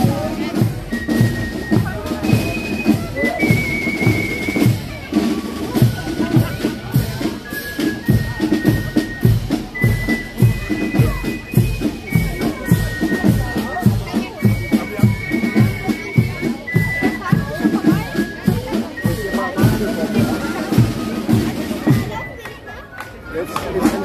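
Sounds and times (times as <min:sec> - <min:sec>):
marching band drums: 0:00.0 - 0:24.0.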